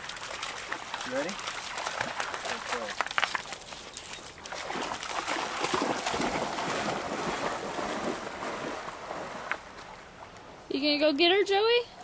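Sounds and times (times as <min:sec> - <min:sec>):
dog splashing through water: 0:00.0 - 0:09.5.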